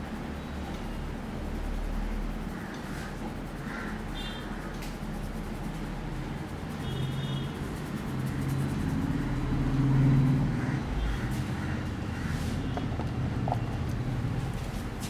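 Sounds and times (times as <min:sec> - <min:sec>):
vehicle engine passing by: 0:08.0 - 0:15.0.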